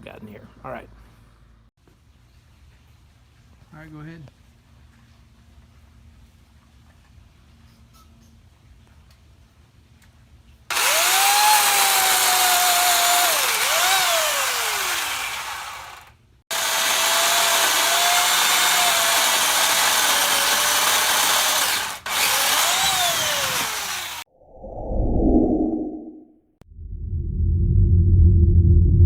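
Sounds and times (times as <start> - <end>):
saw chain noise: 10.7 - 24.2
electric pole saw motor whine: 10.7 - 24.3.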